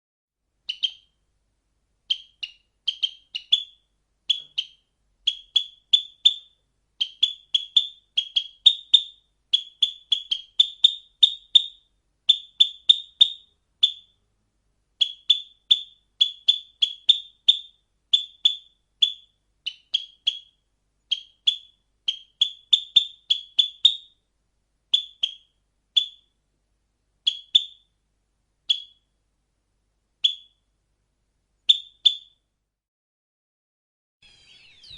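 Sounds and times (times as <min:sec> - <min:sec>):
bird chirping: 0:00.6 - 0:01.2, 0:02.0 - 0:14.3, 0:15.0 - 0:24.3, 0:24.9 - 0:26.4, 0:27.2 - 0:28.0, 0:28.6 - 0:29.2, 0:30.2 - 0:30.8, 0:31.6 - 0:32.5, 0:34.2 - 0:34.9.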